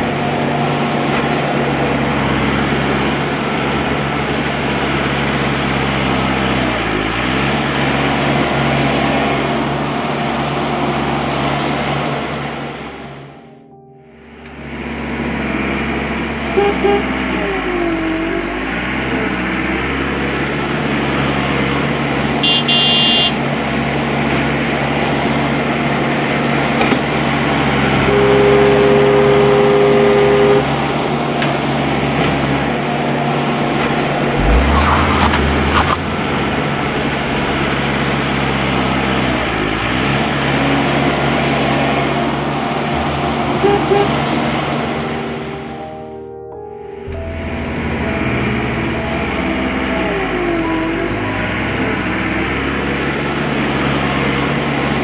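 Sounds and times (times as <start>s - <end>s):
vehicle engine noise: 14.3s - 45.8s, 47.2s - 55.0s
two-note horn: 16.5s - 18.9s, 22.4s - 23.5s, 27.9s - 31.5s, 43.6s - 44.6s.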